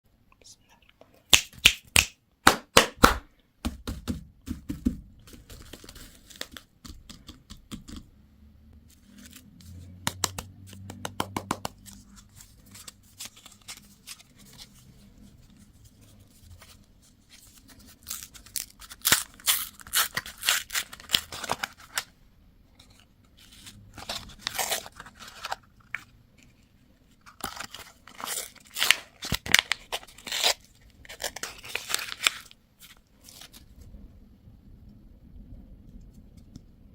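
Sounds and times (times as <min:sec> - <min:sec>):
candy wrapper tearing and crinkling: 0:17.6 - 0:22.1, 0:24.0 - 0:26.0, 0:27.2 - 0:33.7.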